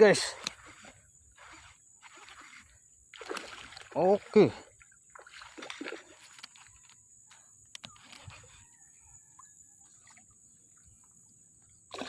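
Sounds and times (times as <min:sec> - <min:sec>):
small clicks: 0:05.6 - 0:08.6.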